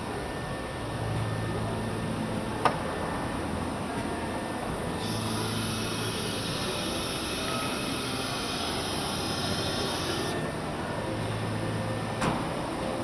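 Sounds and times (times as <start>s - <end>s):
machine hum: 4.6s - 12.9s
spindle high hiss: 5.0s - 10.4s.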